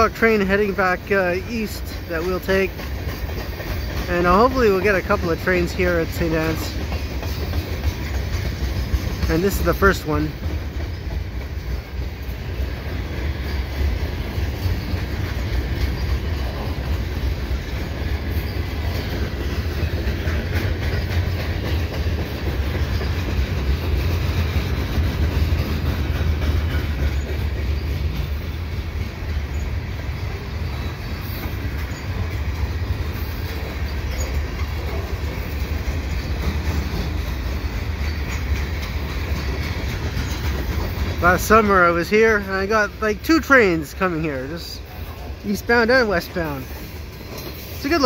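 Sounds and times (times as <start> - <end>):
train wheels clattering on rails: 0.0 - 48.0.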